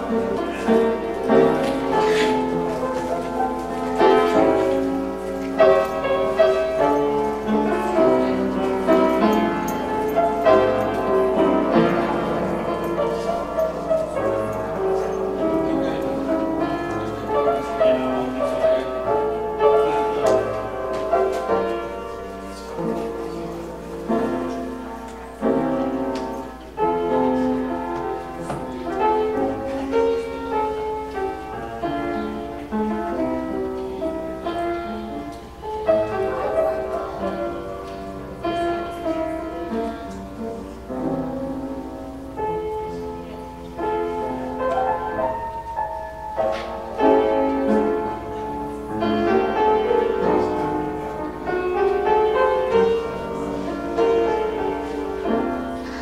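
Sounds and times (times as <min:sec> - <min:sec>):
slow piano chords: 0:00.0 - 0:56.0.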